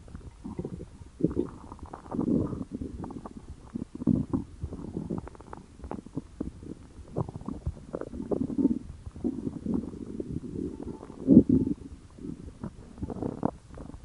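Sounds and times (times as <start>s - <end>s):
stomach growling and gurgling: 0.0s - 14.0s.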